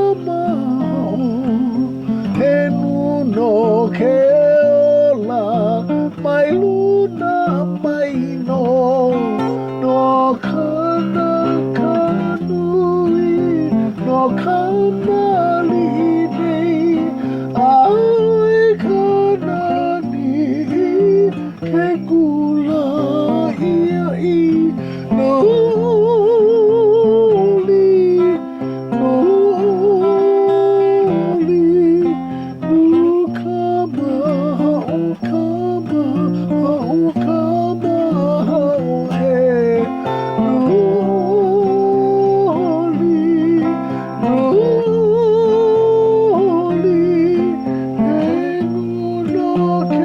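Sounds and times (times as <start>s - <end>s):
person singing a hymn: 0.0s - 50.0s.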